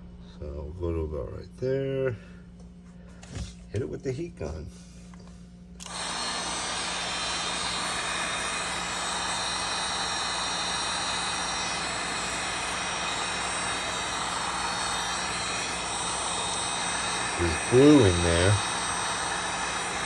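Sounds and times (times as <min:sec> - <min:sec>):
heat gun blowing hot air: 0:05.8 - 0:20.0.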